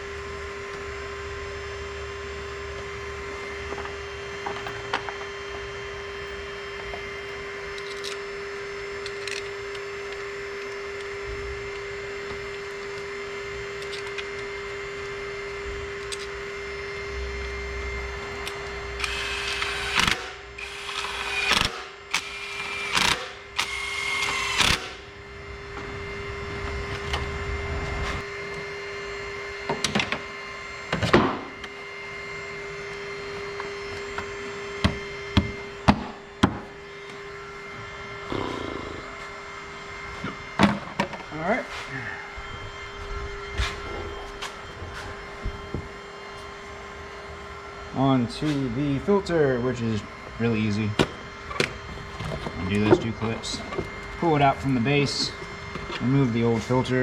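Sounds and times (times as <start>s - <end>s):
steady hum: 0.0s - 57.0s
ratchet bursts: 19.0s - 25.0s.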